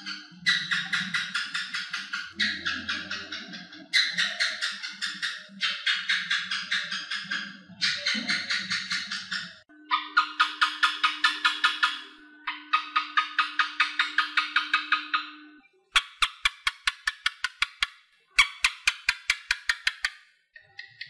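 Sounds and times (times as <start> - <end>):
gecko chirping clicks: 16.0 - 20.2.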